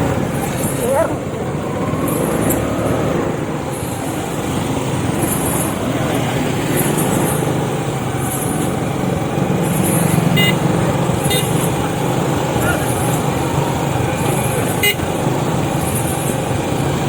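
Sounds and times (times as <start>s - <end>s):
vehicle engine running: 0.0s - 17.0s
short beep: 10.4s - 10.6s.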